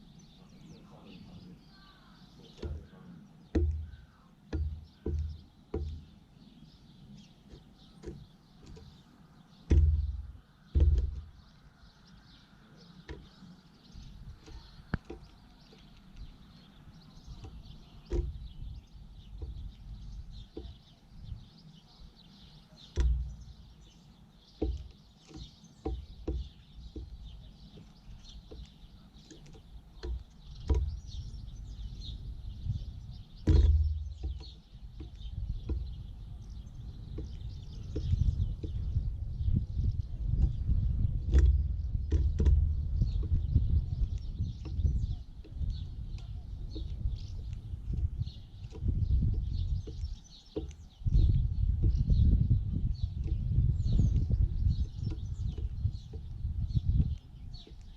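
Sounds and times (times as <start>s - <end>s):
faint bird chirps: 0.0s - 57.9s
low thumps: 7.5s - 11.6s, 17.2s - 21.4s, 22.9s - 23.8s, 24.5s - 57.8s.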